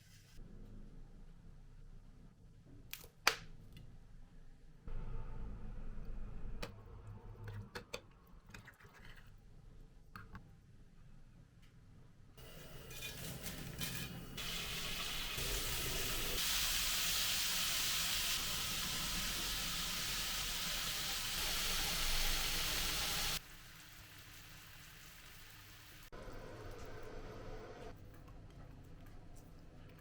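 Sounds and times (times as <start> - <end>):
cutlet sizzling in hot oil: 12.4 - 26.2.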